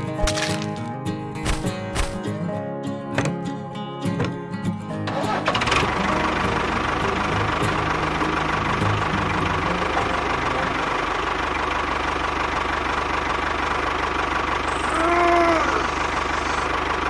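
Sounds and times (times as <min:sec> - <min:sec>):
small engine chugging: 0:05.1 - 0:17.0.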